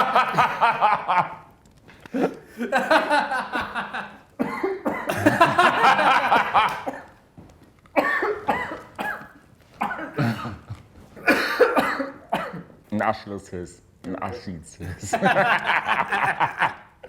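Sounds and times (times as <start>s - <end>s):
man coughing and gagging: 2.1s - 7.2s, 8.0s - 12.8s.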